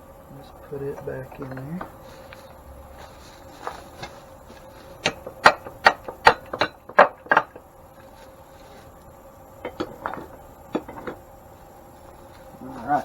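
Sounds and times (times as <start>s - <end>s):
hammer tapping metal bushing: 0.8s - 2.4s, 4.0s - 7.7s, 9.6s - 11.3s.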